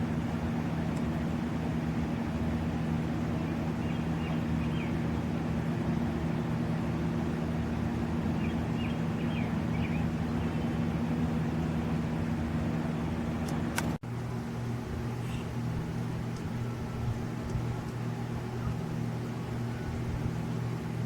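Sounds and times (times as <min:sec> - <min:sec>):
low motor hum: 0:00.0 - 0:21.0.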